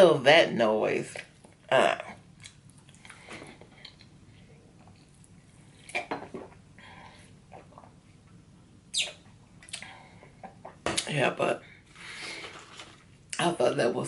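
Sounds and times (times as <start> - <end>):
person chewing food: 2.3 - 6.0, 9.6 - 10.8.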